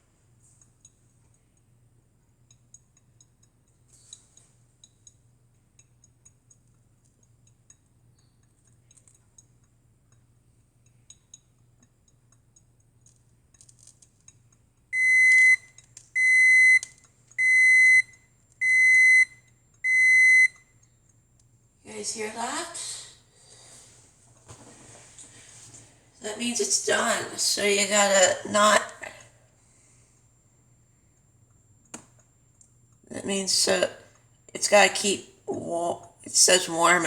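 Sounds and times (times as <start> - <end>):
coffee maker beeping: 15.0 - 20.6.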